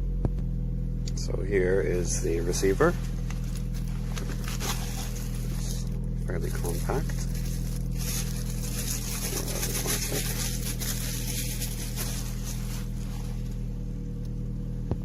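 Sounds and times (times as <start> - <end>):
car engine idling: 0.0 - 15.0
packaging crinkling: 3.0 - 13.6.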